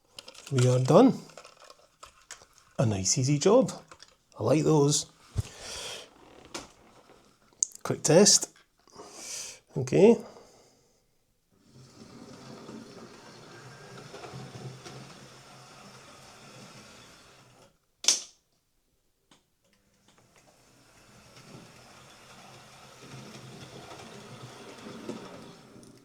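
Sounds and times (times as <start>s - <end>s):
model train motor whirring: 12.6s - 17.7s, 20.4s - 26.0s.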